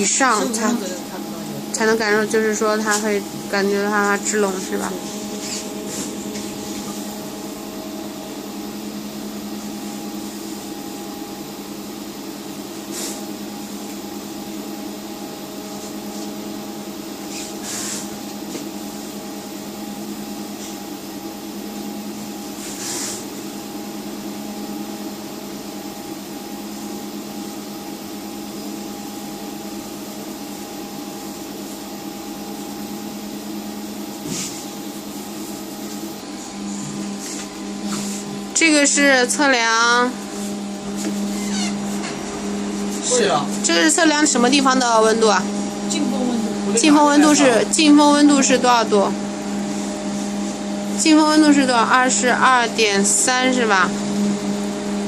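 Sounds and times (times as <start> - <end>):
air conditioner hum: 0.0 - 55.0.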